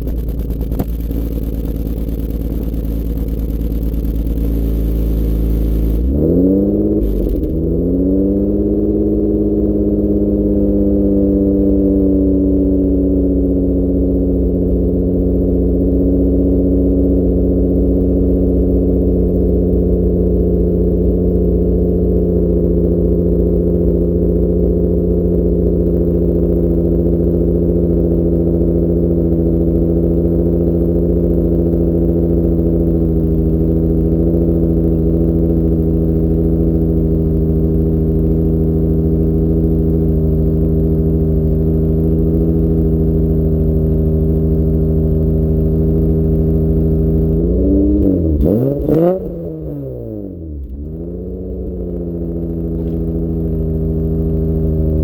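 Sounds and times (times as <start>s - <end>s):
car engine fast idle: 0.0s - 6.0s.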